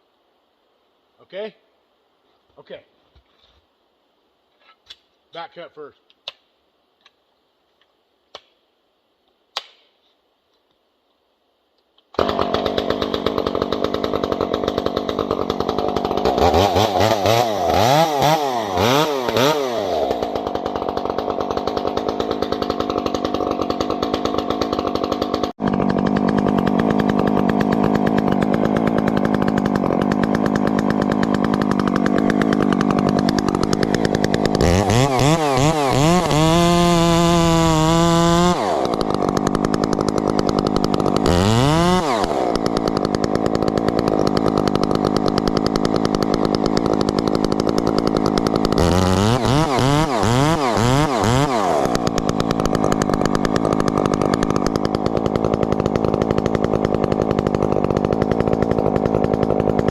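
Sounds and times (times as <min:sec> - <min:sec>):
chainsaw revving: 0:12.2 - 0:59.9.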